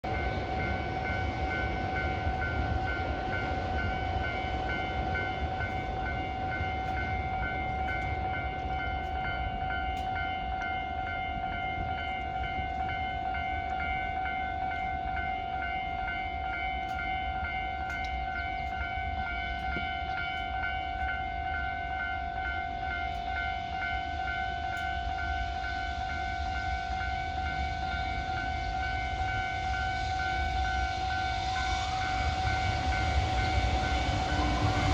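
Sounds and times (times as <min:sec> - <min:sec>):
level-crossing warning bell: 0:00.0 - 0:34.9
low rumble: 0:30.9 - 0:34.9.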